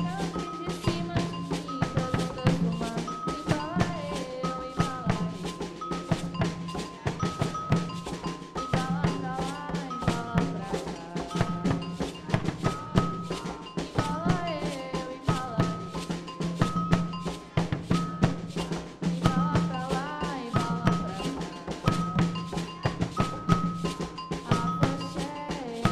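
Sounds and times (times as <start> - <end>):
pitched melody line: 0.0 - 25.5
drums playing: 0.0 - 25.9.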